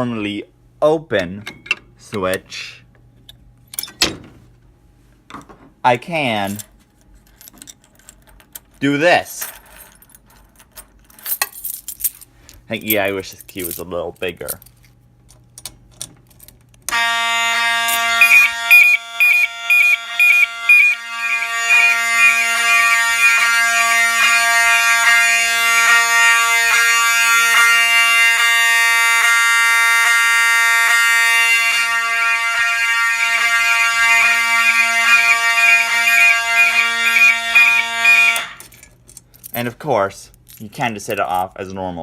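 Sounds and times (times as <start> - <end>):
fire alarm chirp: 16.9 - 38.7
fire alarm buzzing tone: 16.9 - 38.8.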